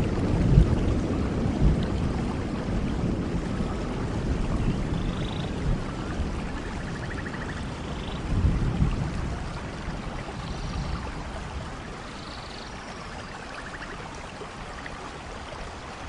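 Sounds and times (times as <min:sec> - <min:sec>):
rain falling in forest: 0:00.0 - 0:16.0.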